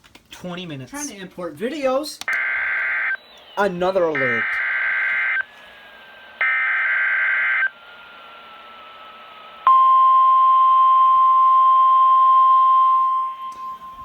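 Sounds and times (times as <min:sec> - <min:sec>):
steady warning alarm tone: 0:02.3 - 0:07.8, 0:09.6 - 0:14.0
harsh burst of data tones: 0:02.3 - 0:08.5.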